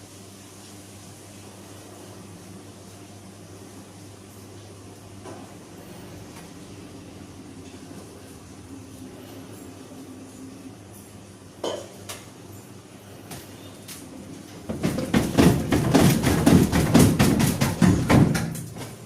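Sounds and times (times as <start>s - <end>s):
washing machine hum: 0.0s - 19.0s
washing machine drum banging: 14.4s - 19.0s.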